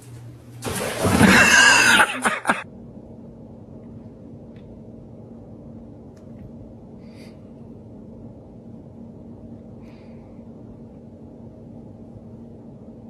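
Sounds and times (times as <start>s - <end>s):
loud rough vocal cry: 1.2s - 2.6s.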